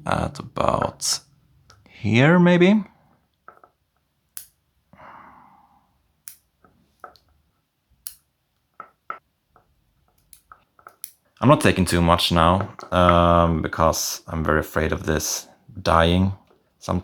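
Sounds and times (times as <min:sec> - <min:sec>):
soft breath: 0:04.9 - 0:06.0.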